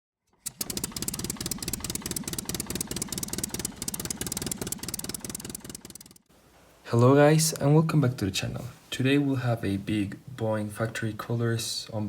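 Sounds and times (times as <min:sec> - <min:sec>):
motor running with fast pulse: 0:00.5 - 0:06.2.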